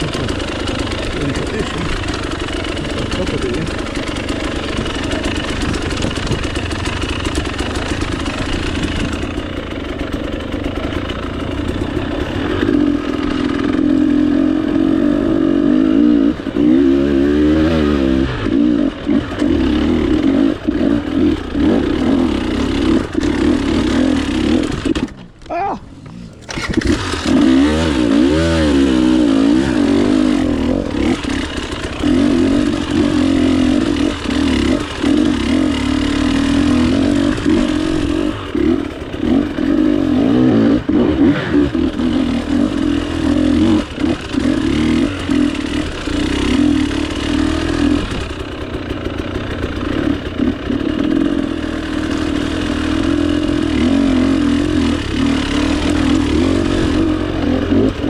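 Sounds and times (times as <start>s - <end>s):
two-stroke dirt bike engine revving: 0.0s - 58.0s.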